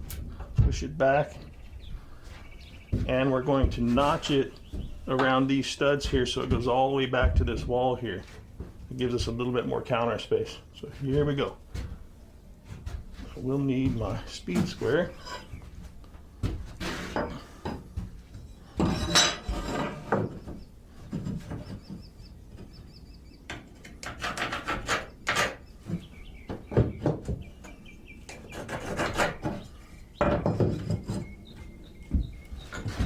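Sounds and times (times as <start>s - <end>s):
wooden knocks and scrapes: 0.0s - 5.4s, 11.0s - 22.7s, 23.5s - 33.0s.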